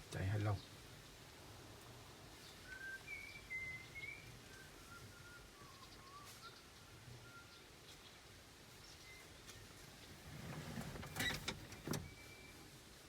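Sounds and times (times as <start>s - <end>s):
faint whistled bird calls: 2.5s - 8.0s, 8.8s - 9.4s, 12.0s - 12.7s.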